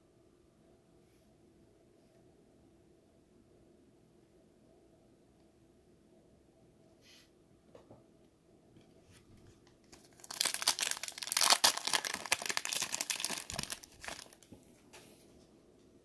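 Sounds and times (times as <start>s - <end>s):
wrapper tearing and crinkling: 9.9s - 14.5s.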